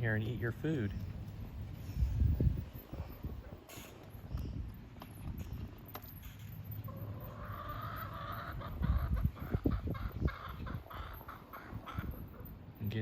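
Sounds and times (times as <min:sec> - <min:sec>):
wind buffeting microphone: 0:00.0 - 0:05.9, 0:08.0 - 0:12.8
chicken calling: 0:06.9 - 0:12.5.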